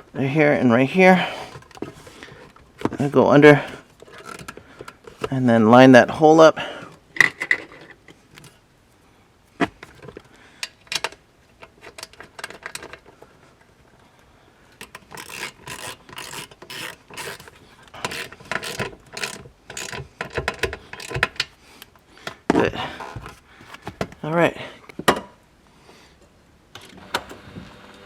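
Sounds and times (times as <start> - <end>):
hand ratchet rasping: 14.8 - 21.5.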